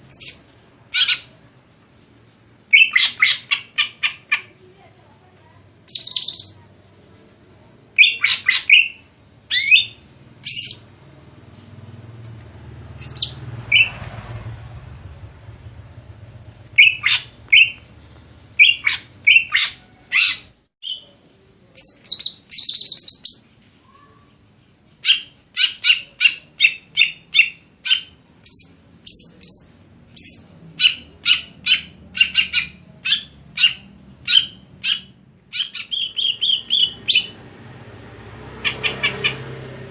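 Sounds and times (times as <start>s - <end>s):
bird chirps and whistles: 2.7s - 4.2s, 5.9s - 6.7s, 8.0s - 10.8s, 13.0s - 14.0s, 16.8s - 17.8s, 18.6s - 21.1s, 21.8s - 23.4s, 25.0s - 37.4s.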